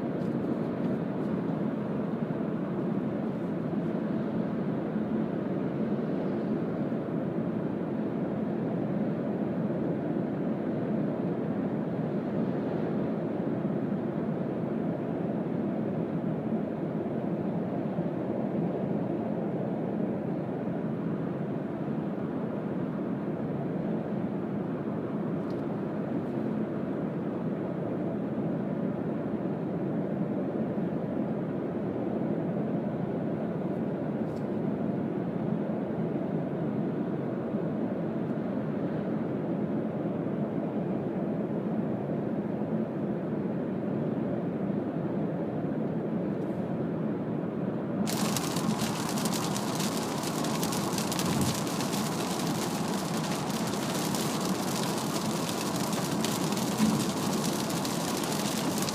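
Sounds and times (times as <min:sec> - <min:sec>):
faint ticks: 0:48.1 - 0:58.9
tyres hissing on wet road: 0:48.1 - 0:58.9
wind noise: 0:48.1 - 0:58.9.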